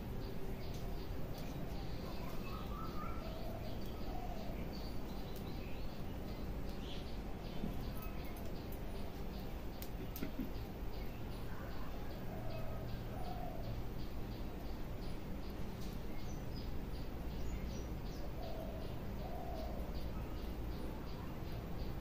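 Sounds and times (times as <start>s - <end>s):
dove cooing: 18.3s - 20.3s.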